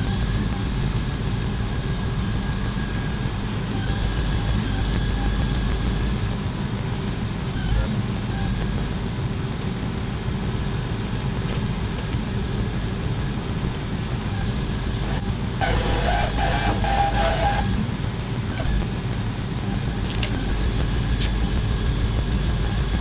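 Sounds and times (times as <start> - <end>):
loud multi-tone sound: 14.4 - 18.0
truck engine running: 14.5 - 18.9.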